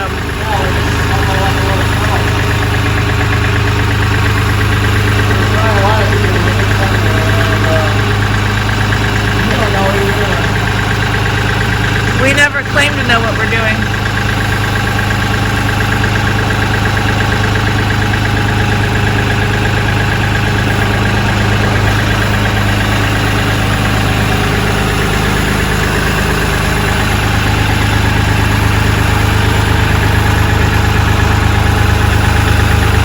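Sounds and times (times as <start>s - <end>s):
tractor diesel engine idling: 0.0s - 33.0s.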